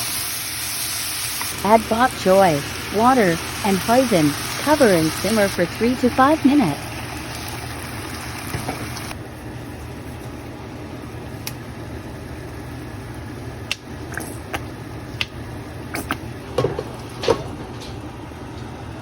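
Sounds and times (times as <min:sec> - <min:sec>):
steady low hum: 0:01.4 - 0:08.5.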